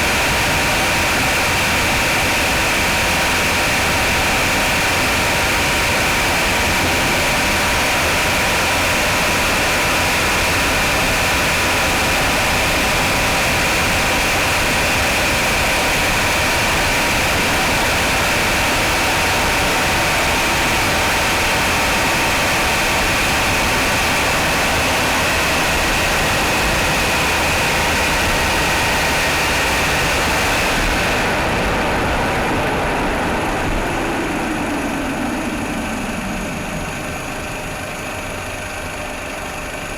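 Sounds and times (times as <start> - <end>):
car engine idling: 19.8 - 39.9
high whine: 30.1 - 39.9.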